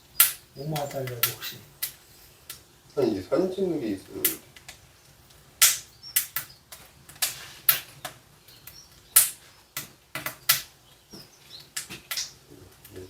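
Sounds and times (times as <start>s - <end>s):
faint bird chirps: 0.0s - 13.0s
sharp clacks: 4.2s - 10.7s.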